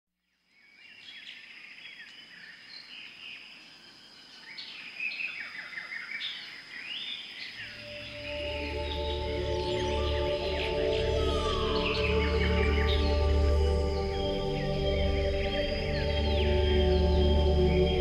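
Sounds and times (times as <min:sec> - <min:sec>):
birds chirping and whistling: 0:05.3 - 0:18.0
low sustained music: 0:07.7 - 0:18.0
steady high tone: 0:07.7 - 0:18.0.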